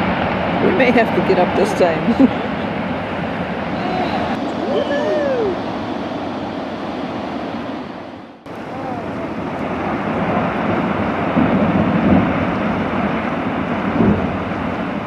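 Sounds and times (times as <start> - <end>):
heavy waves: 0.0 - 15.0
rushing wind: 0.0 - 15.0
wind buffeting microphone: 0.0 - 15.0.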